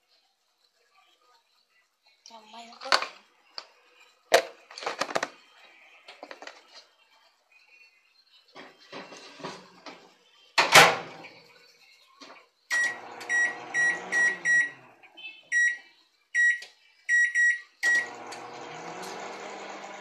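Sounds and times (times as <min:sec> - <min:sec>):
microwave door shutting: 0:10.6 - 0:11.1
microwave keypad beeps: 0:12.7 - 0:14.8, 0:15.5 - 0:15.8, 0:16.4 - 0:18.2
microwave oven humming: 0:12.7 - 0:14.9, 0:17.8 - 0:20.0.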